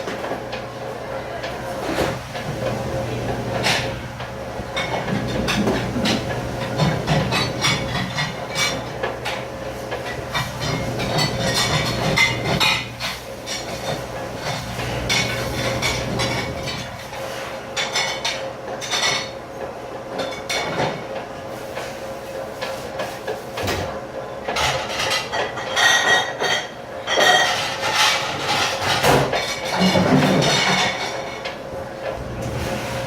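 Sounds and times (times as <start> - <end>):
dishes and cutlery clattering: 3.4 - 4.0, 4.8 - 19.4, 24.5 - 31.6.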